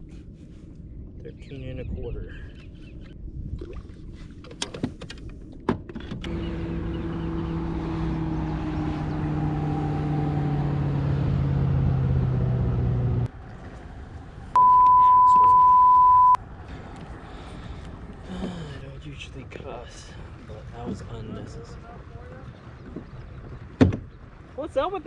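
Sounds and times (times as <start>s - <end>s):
powerboat engine running: 6.3s - 25.0s
censor beep: 14.6s - 16.4s.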